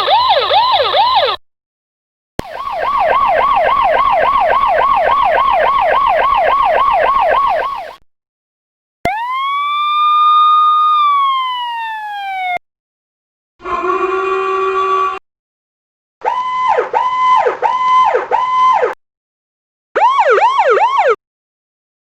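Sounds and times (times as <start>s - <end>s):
rising and falling siren tone: 0.0s - 1.4s, 2.4s - 8.0s, 9.1s - 12.6s, 16.2s - 19.0s, 20.0s - 21.2s
yelp siren: 0.0s - 1.4s, 2.4s - 8.0s, 9.1s - 12.6s, 16.2s - 19.0s, 20.0s - 21.2s.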